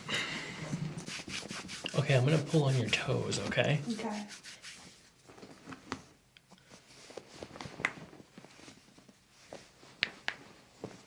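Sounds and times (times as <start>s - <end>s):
hands rubbing on skin: 0.9s - 5.2s.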